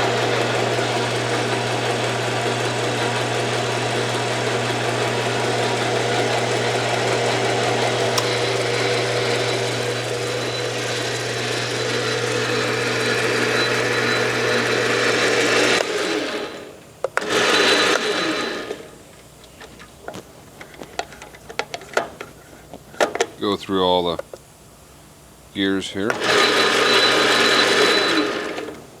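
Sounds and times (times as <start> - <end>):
lathe motor hum with gear whine: 0.0 - 19.0, 26.1 - 29.0.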